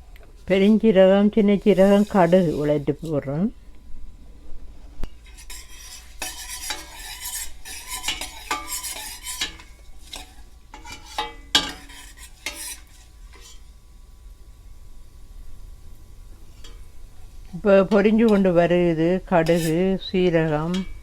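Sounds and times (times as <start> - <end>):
ghee sizzling: 0.0 - 21.0
metal spoon scraping spices in pan: 0.5 - 3.3, 5.2 - 13.7, 19.2 - 21.0.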